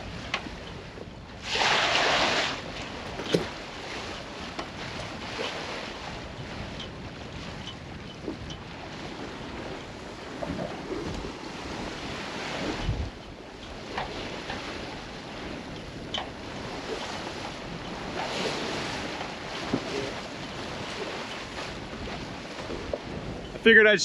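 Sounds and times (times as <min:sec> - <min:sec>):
water rushing along hull: 0:00.0 - 0:24.0
wind buffeting microphone: 0:02.2 - 0:23.7
dull thump: 0:03.0 - 0:03.6
short sharp knocks: 0:03.0 - 0:03.6.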